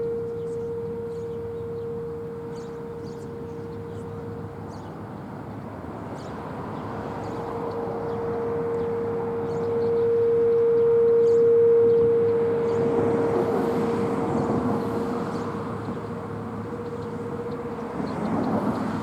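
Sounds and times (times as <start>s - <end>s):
distant warning siren: 0.0s - 19.0s.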